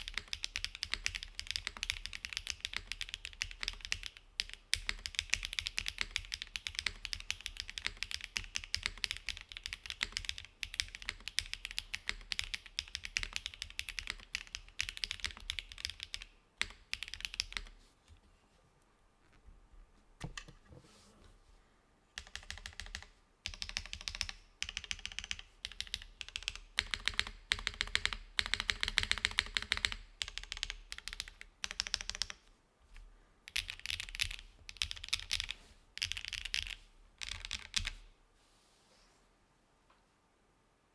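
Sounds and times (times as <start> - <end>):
mechanical keyboard typing: 0.0 - 17.7, 22.2 - 32.4, 33.5 - 38.0.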